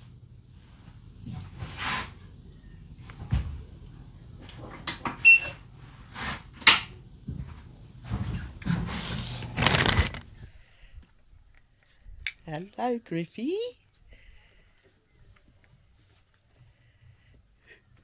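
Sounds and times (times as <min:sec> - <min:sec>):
rustling scrape: 0:00.6 - 0:02.4, 0:05.9 - 0:06.7, 0:07.5 - 0:10.4.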